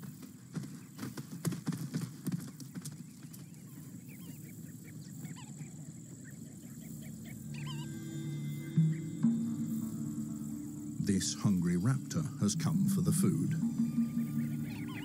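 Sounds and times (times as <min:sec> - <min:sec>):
hooves clattering on hard ground: 0:00.0 - 0:07.2.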